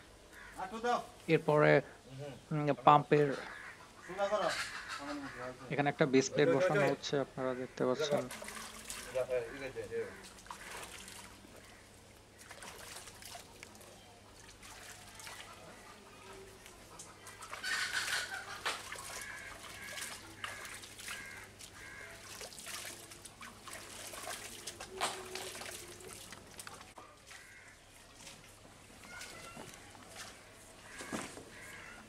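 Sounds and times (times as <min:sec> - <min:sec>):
poultry clucking: 0:03.2 - 0:07.0, 0:15.3 - 0:22.1.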